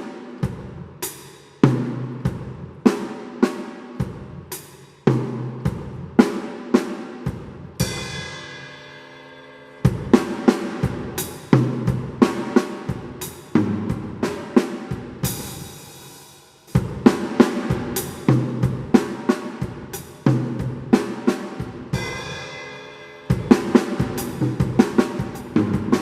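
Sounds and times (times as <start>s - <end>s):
drum kit playing: 0.0s - 26.0s
cymbal wash: 7.2s - 13.5s, 21.0s - 26.0s.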